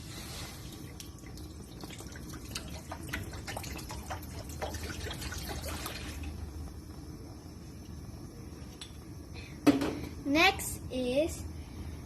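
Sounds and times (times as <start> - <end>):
liquid pouring into a pot: 0.4 - 6.5
small splashes and drips: 0.6 - 6.4.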